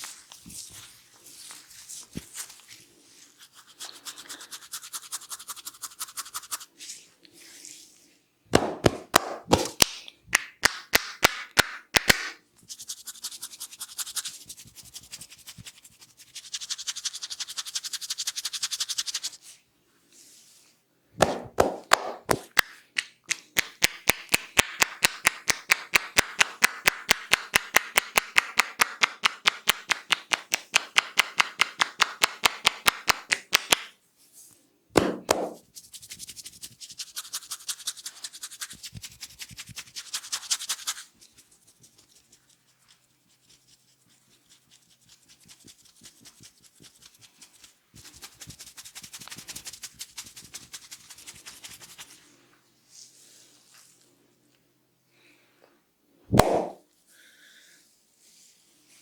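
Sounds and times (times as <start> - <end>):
rubbing and scrubbing of hair: 0.0 - 8.2, 12.7 - 19.6, 35.3 - 54.0
sharp percussive strikes on head: 8.6 - 9.8.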